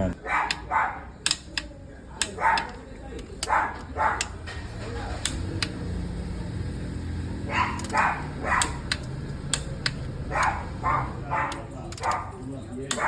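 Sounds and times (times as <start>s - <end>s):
dog barking: 0.2s - 1.2s, 2.2s - 4.5s, 7.3s - 9.0s, 10.2s - 13.0s
sharp clicks: 0.4s - 5.9s, 7.6s - 13.0s.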